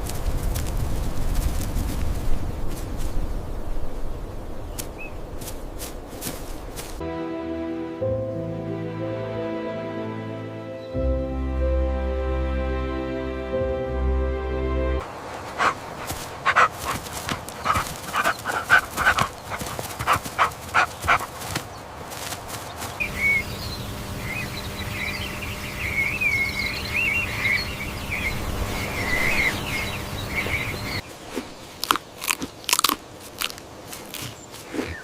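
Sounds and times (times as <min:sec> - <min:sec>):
animal yelping: 0:15.5 - 0:21.6
animal warbling chirping call: 0:23.0 - 0:31.0.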